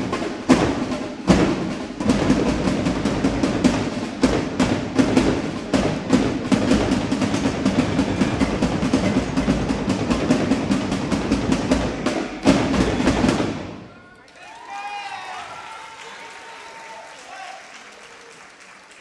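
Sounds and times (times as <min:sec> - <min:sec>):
marching drum line: 0:00.0 - 0:14.0.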